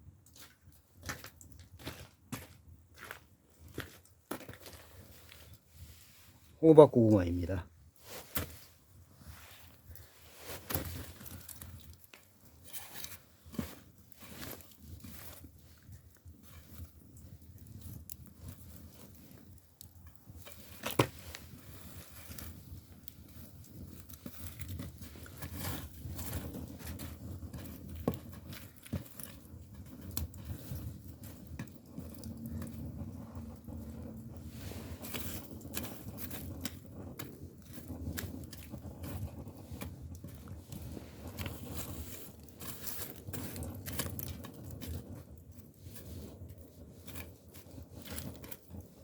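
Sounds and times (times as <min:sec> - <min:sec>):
firewood crackling and popping: 0:00.0 - 0:49.0
low rumble of fire: 0:00.0 - 0:49.0.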